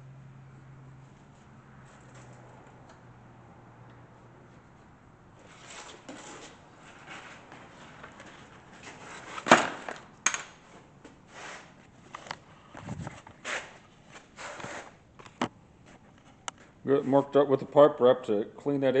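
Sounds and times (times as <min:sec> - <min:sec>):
light scraping and shuffling: 0:04.5 - 0:09.5, 0:10.6 - 0:17.4.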